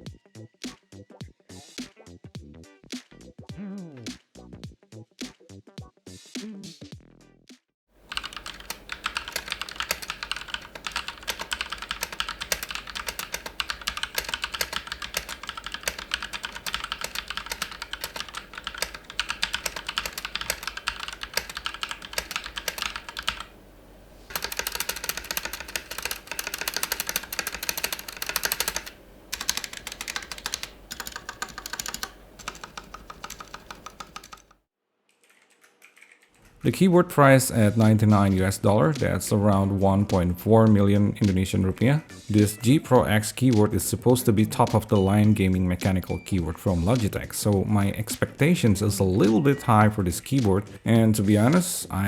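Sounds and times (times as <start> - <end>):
mechanical keyboard typing: 8.0 - 23.5, 24.3 - 36.5.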